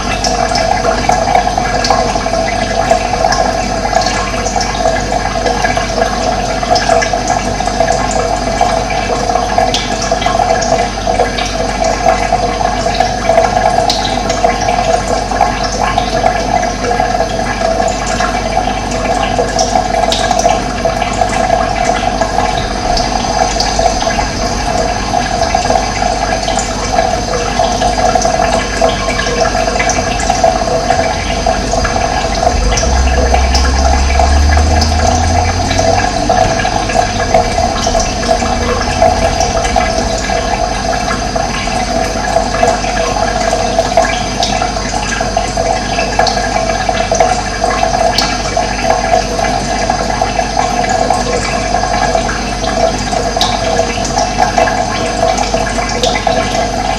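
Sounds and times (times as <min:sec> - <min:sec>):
running water rushing: 0:00.0 - 0:56.9
low hum: 0:20.6 - 0:44.6.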